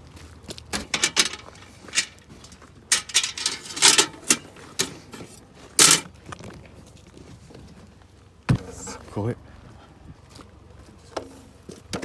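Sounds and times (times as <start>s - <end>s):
camp gear clicking and clattering: 0.6s - 7.2s.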